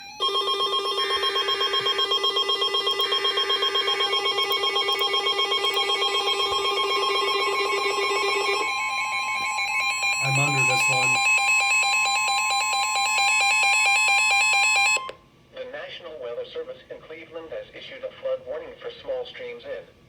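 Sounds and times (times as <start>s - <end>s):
two-tone attention signal: 0.0s - 12.2s.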